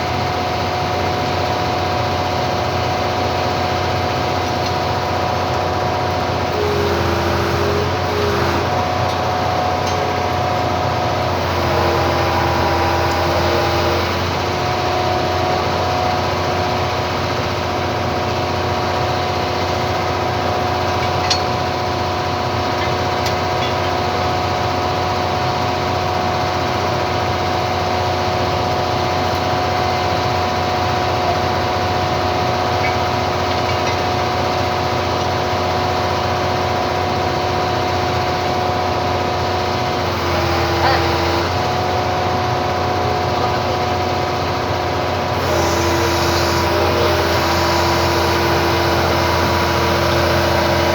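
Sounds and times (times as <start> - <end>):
excavator diesel engine running: 0.0 - 50.9.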